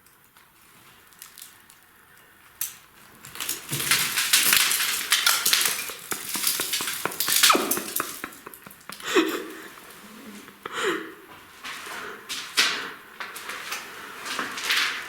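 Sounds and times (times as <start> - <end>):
dishes and utensils clattering: 3.7 - 9.7.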